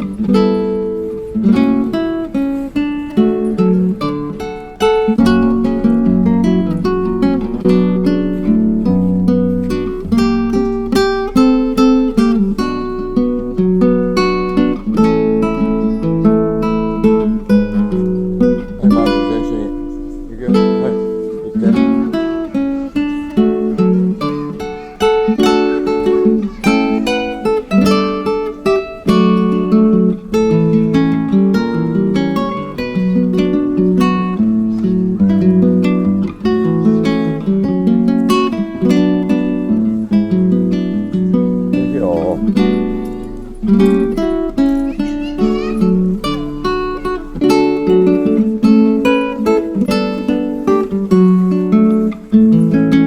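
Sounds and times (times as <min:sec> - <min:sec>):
acoustic guitar melody: 0:00.0 - 0:53.0.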